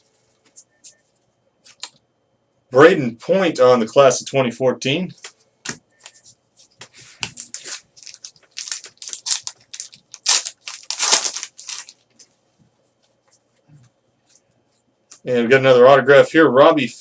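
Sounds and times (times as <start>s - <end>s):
cards being handled: 7.2s - 12.0s
wrapper crinkling and tearing: 7.4s - 12.0s.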